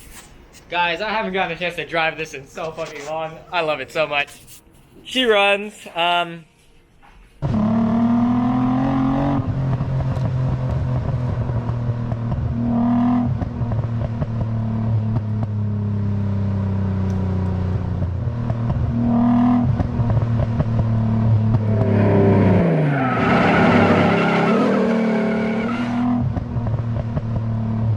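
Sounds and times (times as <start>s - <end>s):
car engine running: 7.4s - 27.9s.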